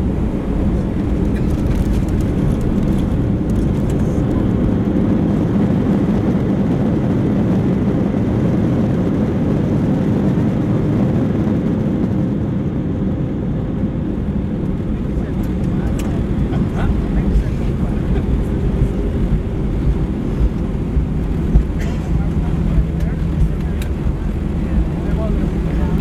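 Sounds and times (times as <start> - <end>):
jet engine roar in cabin: 0.0 - 26.0
low steady hum: 14.2 - 26.0.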